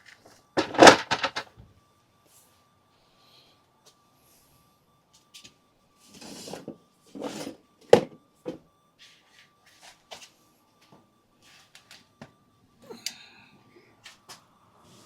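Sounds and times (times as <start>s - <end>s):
plastic scraping: 0.6s - 1.4s.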